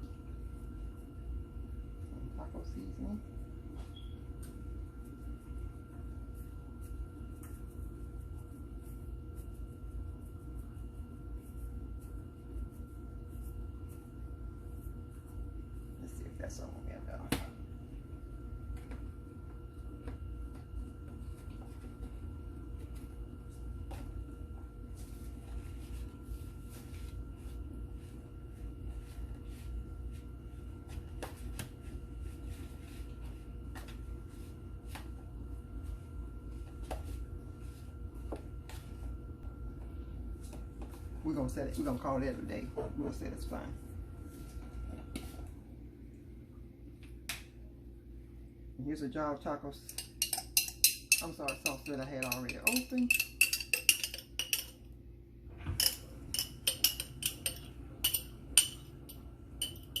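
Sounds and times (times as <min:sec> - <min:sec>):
dishwasher humming: 0:55.5 - 1:00.0.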